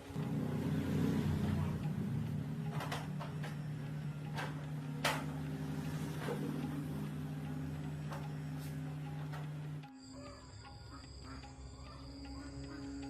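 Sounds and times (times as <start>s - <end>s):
small engine running: 0.0s - 13.0s
sharp clicks and knocks: 1.7s - 9.9s.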